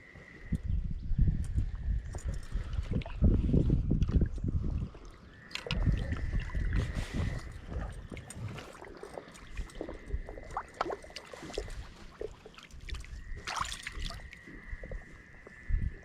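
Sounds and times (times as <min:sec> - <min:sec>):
water sloshing and trickling: 0:01.2 - 0:16.0
small splashes: 0:05.0 - 0:15.0.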